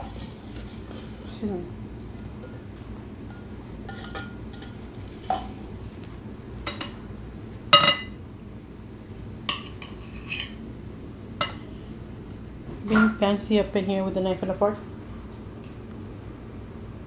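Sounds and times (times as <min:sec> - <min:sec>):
cutlery clinking on a plate: 0:07.8 - 0:08.2.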